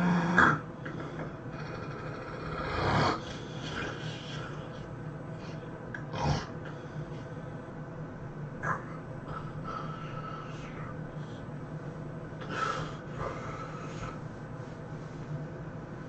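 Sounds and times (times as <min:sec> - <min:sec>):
person snoring: 0:00.0 - 0:06.8
steady low hum: 0:00.0 - 0:16.0.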